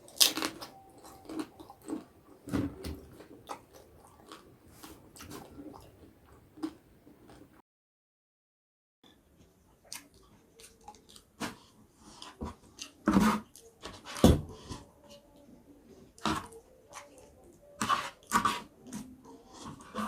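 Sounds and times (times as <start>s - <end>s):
person chewing crunchy food: 0.0s - 7.5s.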